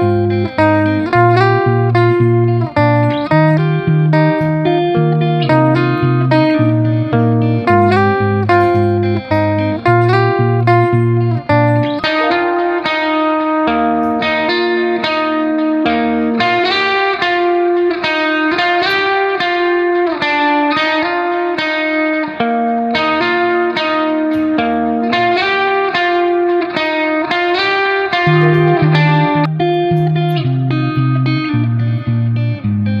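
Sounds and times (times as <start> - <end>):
bass notes: 0.0 - 13.0, 28.2 - 33.0
plucked guitar melody: 0.0 - 33.0.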